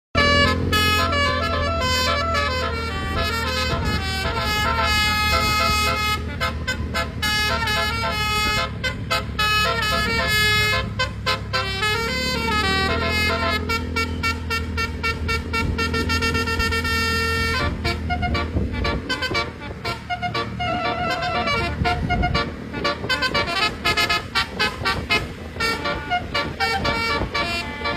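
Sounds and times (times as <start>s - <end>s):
musical air horn melody: 0.2s - 27.9s.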